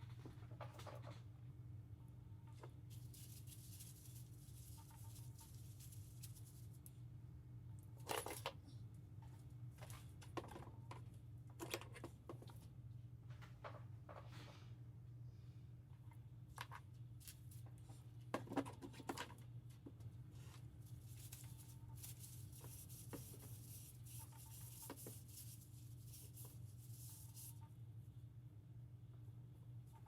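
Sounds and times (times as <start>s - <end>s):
soft rustling: 20.3s - 27.6s.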